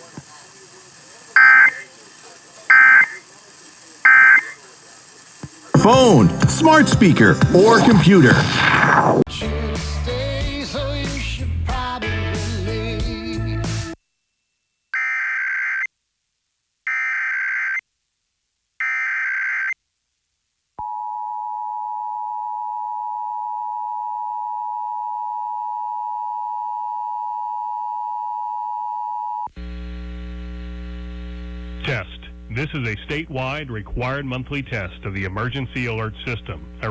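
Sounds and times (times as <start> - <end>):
buzzing digital data tones: 1.4 - 1.9, 2.7 - 3.2, 4.1 - 4.6.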